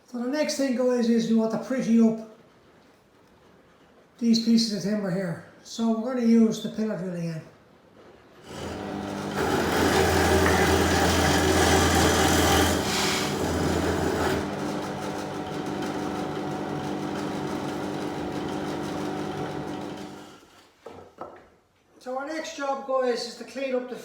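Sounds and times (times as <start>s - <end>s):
pillar drill motor hum: 8.4s - 20.4s
drill bit cutting timber: 8.5s - 20.4s.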